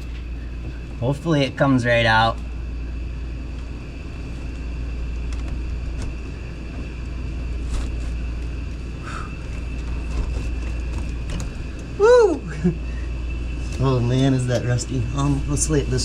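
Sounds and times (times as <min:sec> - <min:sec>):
faint high whine: 0:00.0 - 0:16.0
low hum of shop noise: 0:00.0 - 0:16.0.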